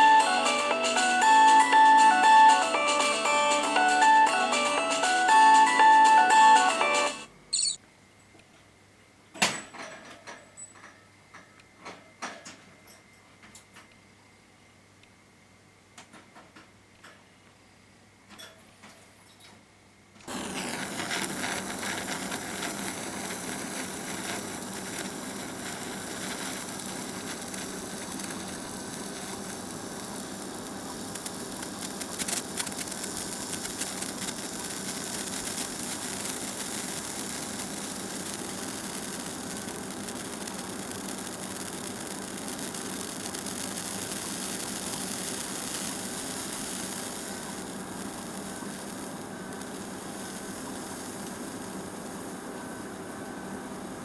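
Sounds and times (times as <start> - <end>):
sparkler fizzing hiss: 0.0 - 6.7, 20.3 - 54.0
sparkler crackles: 0.0 - 7.8, 20.3 - 54.0.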